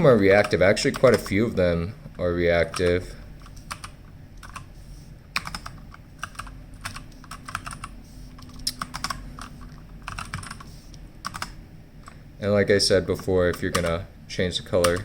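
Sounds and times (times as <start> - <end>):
keyboard keys clicking: 0.4 - 1.3, 5.4 - 12.2, 13.5 - 14.0.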